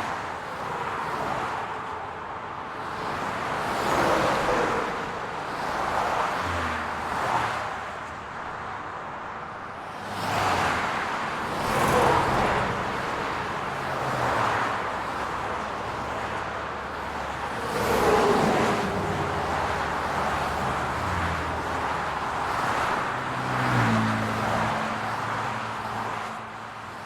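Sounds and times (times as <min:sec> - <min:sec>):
cars driving past: 0:09.8 - 0:27.0.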